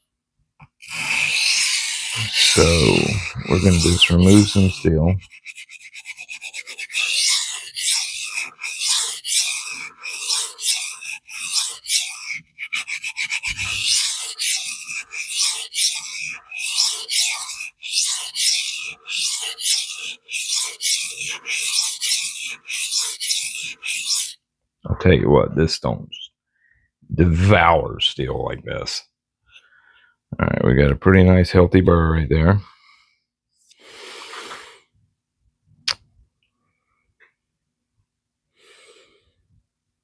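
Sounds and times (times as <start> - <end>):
knife grinding on sharpening stone: 0.8 - 24.4
soft handling scrape: 2.0 - 24.4.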